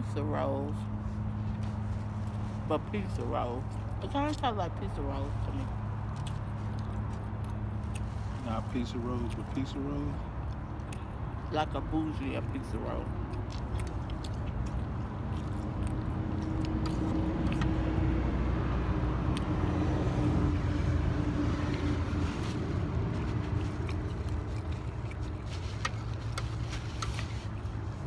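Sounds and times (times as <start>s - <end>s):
car engine rumbling: 12.2s - 28.0s.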